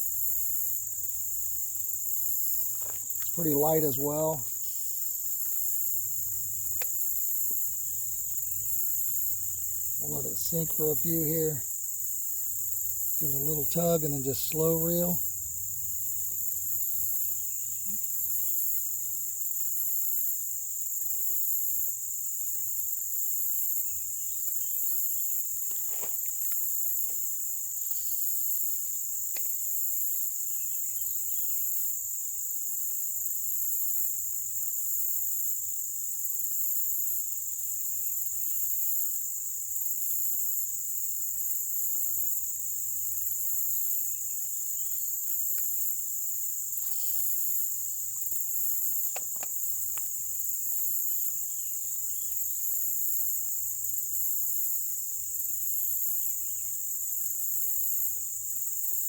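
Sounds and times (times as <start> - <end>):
insects chorus: 0.0 - 59.0.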